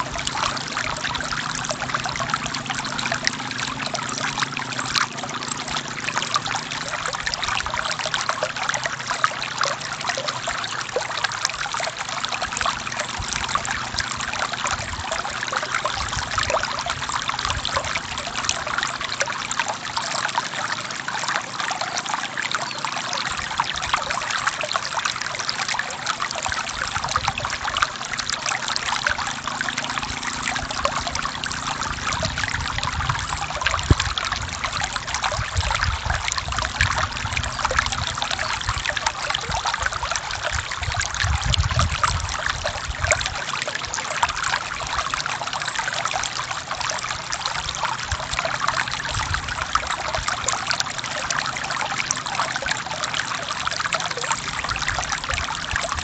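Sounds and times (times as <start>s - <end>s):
stream flowing over rocks: 0.0s - 56.0s.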